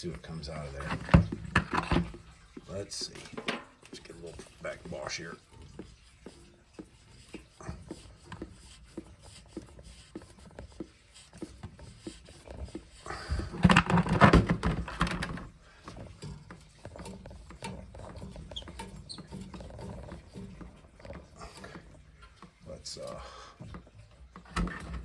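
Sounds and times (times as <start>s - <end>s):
water rushing out of valve: 0.0s - 25.0s.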